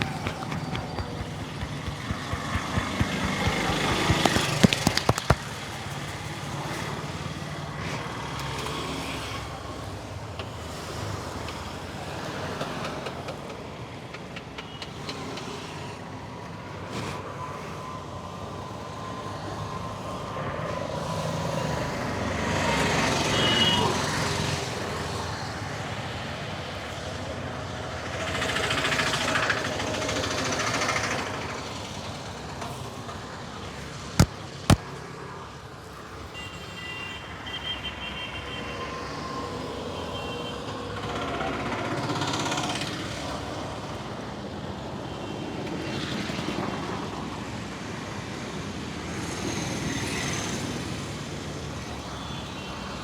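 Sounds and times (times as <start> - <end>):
street traffic noise: 0.0 - 10.5.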